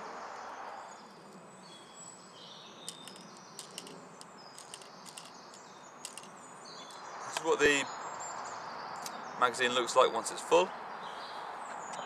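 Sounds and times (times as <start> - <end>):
plastic pellets clicking into magazine: 2.9 - 6.3.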